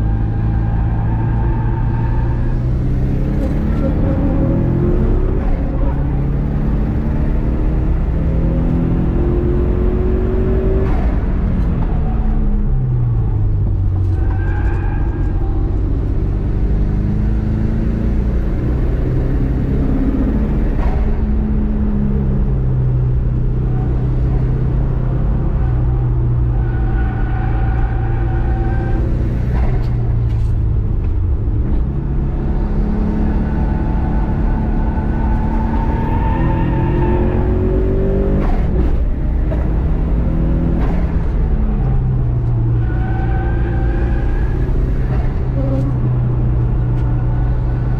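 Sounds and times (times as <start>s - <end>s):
turbocharged car engine revving: 15.3s - 47.9s
heavy rumble: 19.7s - 47.9s.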